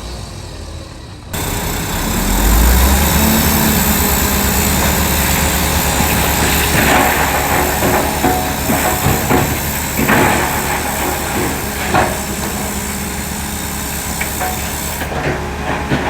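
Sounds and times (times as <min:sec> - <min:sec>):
bulldozer diesel engine running: 0:00.0 - 0:16.0
metal clanks and knocks: 0:03.4 - 0:16.0.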